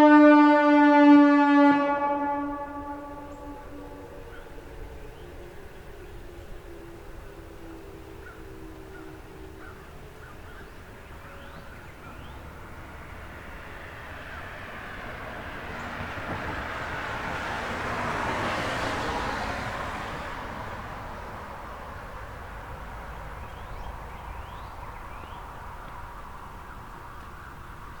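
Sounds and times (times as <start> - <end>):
vehicle passing on road: 0.0 - 28.0.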